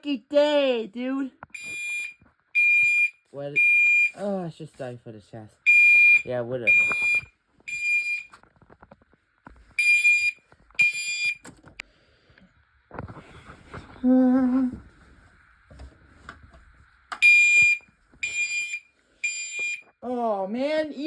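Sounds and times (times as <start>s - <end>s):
fire alarm beeping: 1.5s - 4.2s, 5.6s - 8.4s, 9.8s - 11.5s, 17.2s - 19.9s.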